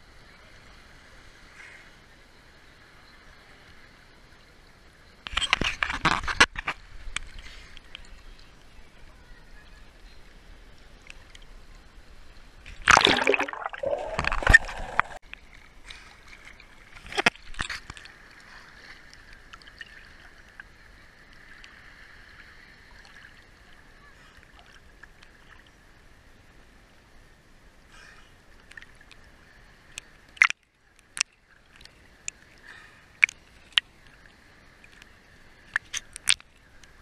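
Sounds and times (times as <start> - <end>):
water splashing and sloshing: 10.0 - 25.8, 28.6 - 37.0.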